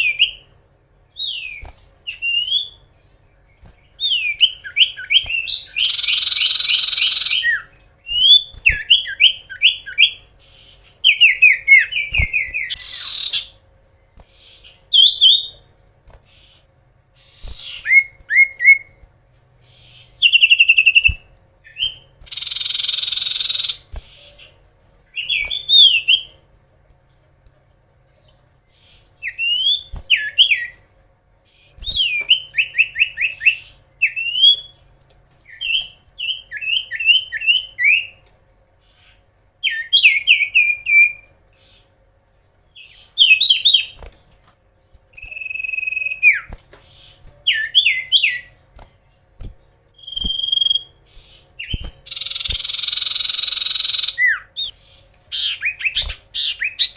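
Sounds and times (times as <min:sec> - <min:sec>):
bird whistling song: 0:00.0 - 0:00.5, 0:01.2 - 0:02.9, 0:03.9 - 0:13.5, 0:14.4 - 0:15.6, 0:17.2 - 0:19.0, 0:19.7 - 0:24.5, 0:25.2 - 0:26.4, 0:28.8 - 0:30.8, 0:31.5 - 0:34.8, 0:35.5 - 0:38.2, 0:39.0 - 0:41.8, 0:42.8 - 0:44.0, 0:45.1 - 0:48.5, 0:50.0 - 0:56.9.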